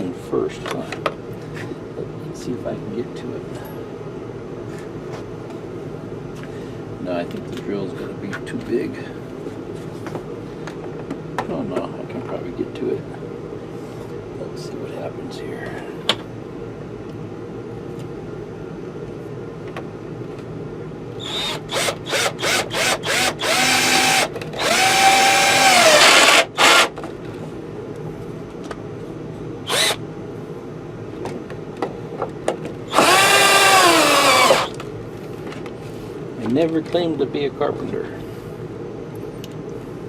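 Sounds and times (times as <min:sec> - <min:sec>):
power drill driving screws: 0:21.2 - 0:26.9, 0:29.7 - 0:30.0, 0:32.9 - 0:34.8.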